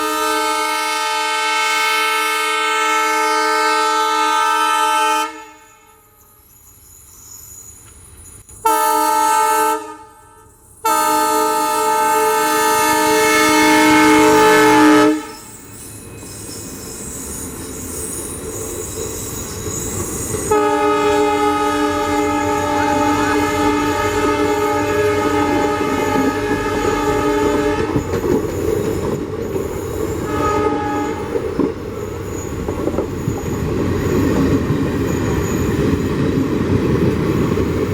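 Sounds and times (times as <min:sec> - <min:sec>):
locomotive horn blasts: 0:00.0 - 0:06.2, 0:08.6 - 0:15.5, 0:20.5 - 0:28.1, 0:30.2 - 0:31.4
train rumble and wheel clatter: 0:00.0 - 0:37.9.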